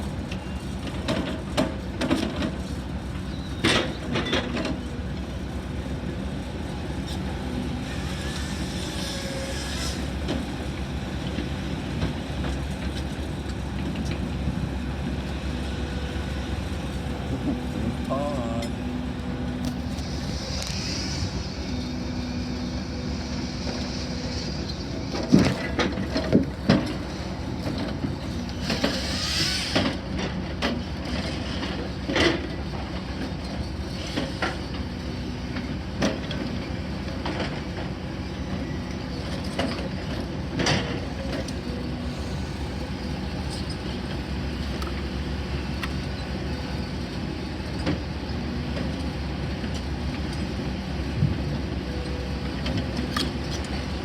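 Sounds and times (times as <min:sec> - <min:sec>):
low motor drone: 0:13.4 - 0:26.8, 0:41.1 - 0:46.2.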